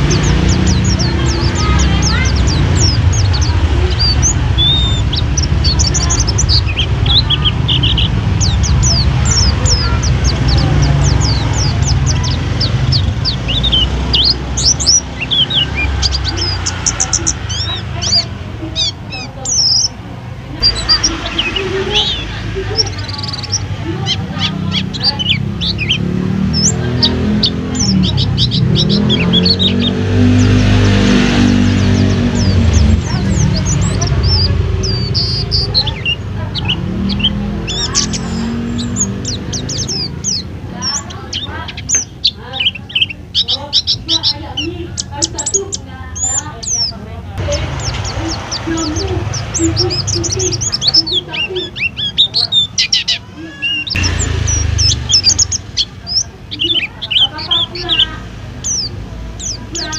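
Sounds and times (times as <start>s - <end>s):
bird singing high whistled notes: 0.0s - 19.9s
low background rumble: 0.0s - 59.9s
small bird chirping and trilling: 0.0s - 59.9s.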